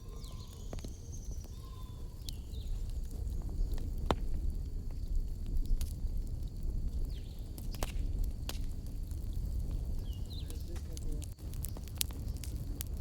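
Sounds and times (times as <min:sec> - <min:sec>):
short bird calls: 0:00.0 - 0:02.7
bonfire crackling and popping: 0:00.0 - 0:13.0.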